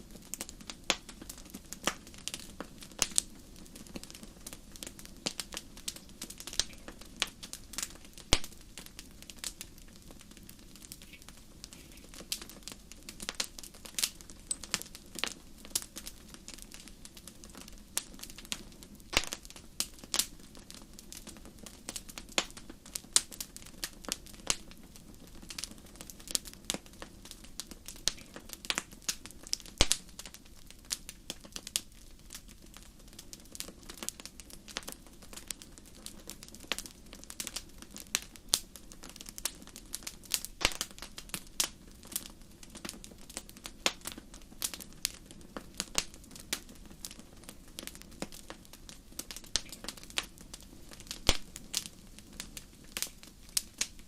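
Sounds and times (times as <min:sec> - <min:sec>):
fire crackling and popping: 0:00.0 - 0:54.0
low rush of flames: 0:00.0 - 0:54.0.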